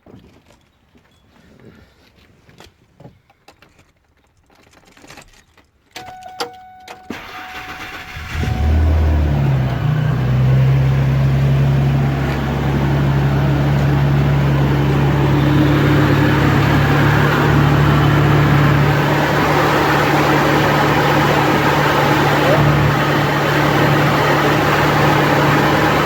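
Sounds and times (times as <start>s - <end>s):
truck engine idling: 7.1s - 26.0s.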